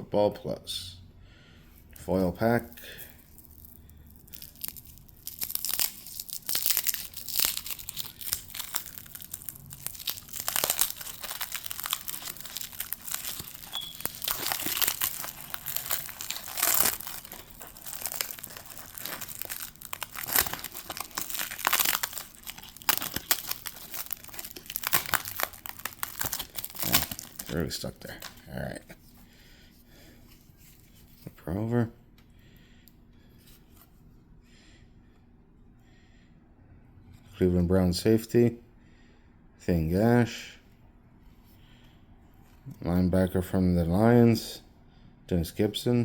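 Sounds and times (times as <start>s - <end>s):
foil wrapper crinkling and tearing: 2.0s - 28.8s.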